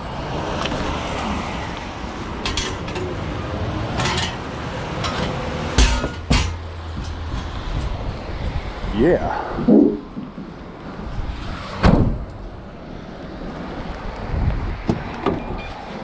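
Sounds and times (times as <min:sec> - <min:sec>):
scrap metal clanking: 0:02.0 - 0:08.5
heavy thumps: 0:04.0 - 0:08.1
wind rumble on microphone: 0:07.0 - 0:16.0.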